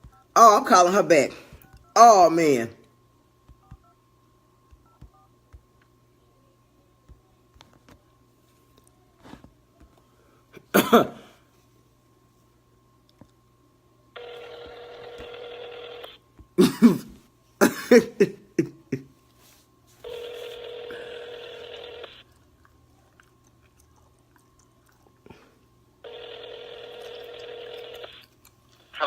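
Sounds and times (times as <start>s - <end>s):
telephone ringback tone: 14.2s - 16.2s, 20.0s - 22.2s, 26.0s - 28.2s.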